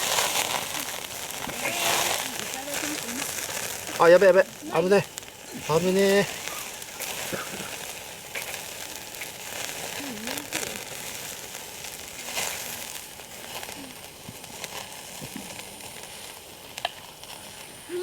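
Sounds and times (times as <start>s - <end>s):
crackling pops: 0.0s - 18.0s
meat sizzling on barbecue: 0.0s - 18.0s.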